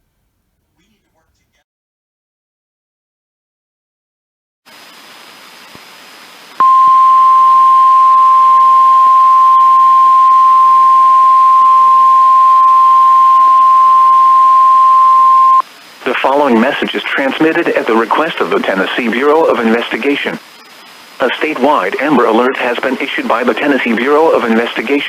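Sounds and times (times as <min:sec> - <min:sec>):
faint radio hiss: 0:00.0 - 0:01.6, 0:04.7 - 0:25.0
steady warning alarm tone: 0:06.6 - 0:15.6.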